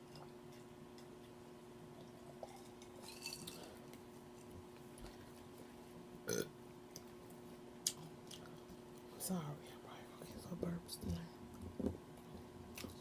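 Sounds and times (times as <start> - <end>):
woman burping: 6.3 - 6.5.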